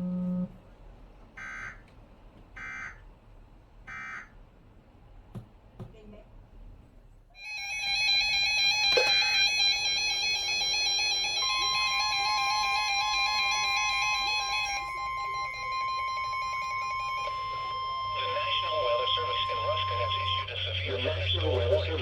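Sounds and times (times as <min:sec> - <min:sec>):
steady warning alarm tone: 0:00.0 - 0:00.5, 0:01.4 - 0:01.9, 0:02.6 - 0:03.0, 0:03.9 - 0:04.4, 0:07.4 - 0:22.0.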